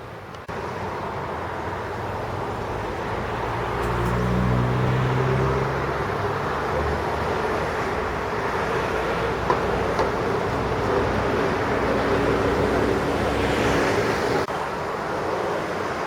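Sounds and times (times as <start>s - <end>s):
road traffic noise: 0.0s - 16.0s.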